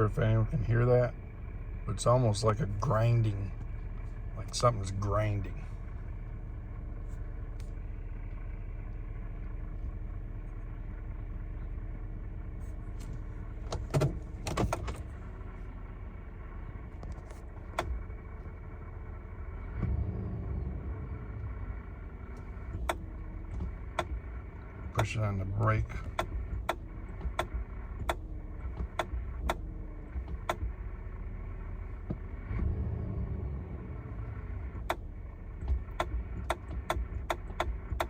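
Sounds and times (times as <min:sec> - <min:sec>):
truck engine humming: 0:00.0 - 0:38.0
sharp clicks: 0:26.0 - 0:30.7, 0:34.7 - 0:38.0.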